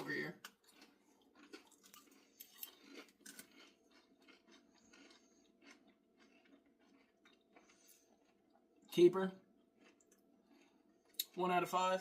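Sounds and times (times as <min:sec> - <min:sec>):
person chewing chips: 0:00.0 - 0:11.8.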